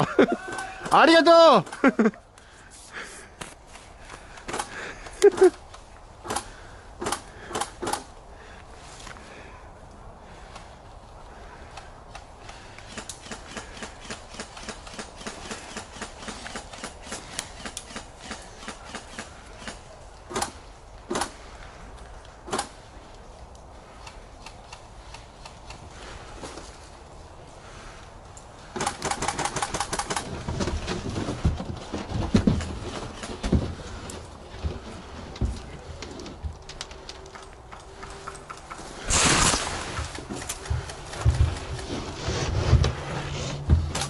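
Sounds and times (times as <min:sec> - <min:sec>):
rustling: 0:10.3 - 0:44.0
airsoft gun shots: 0:39.0 - 0:40.0
full-auto airsoft burst: 0:39.0 - 0:40.1.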